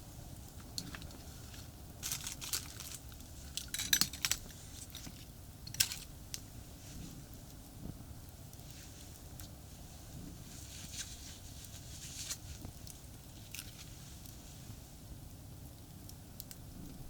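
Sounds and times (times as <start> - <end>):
sharp clicks and clinks: 3.6 - 6.1.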